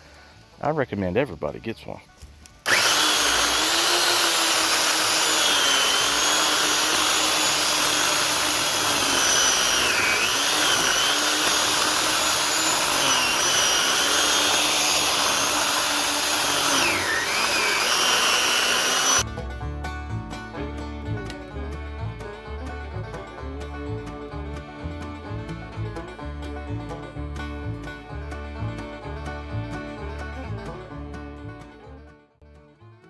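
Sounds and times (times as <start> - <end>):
electric chainsaw motor whine: 2.6 - 19.2.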